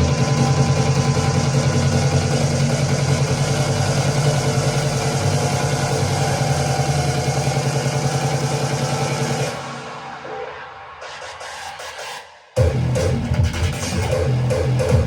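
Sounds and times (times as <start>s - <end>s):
pulsing engine-like drone: 0.0s - 10.1s.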